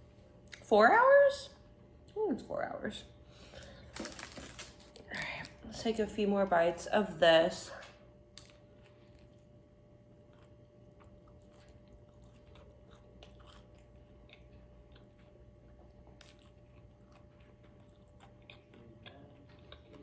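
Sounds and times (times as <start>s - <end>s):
faint steady hum: 0.0s - 20.0s
person chewing food: 8.4s - 20.0s.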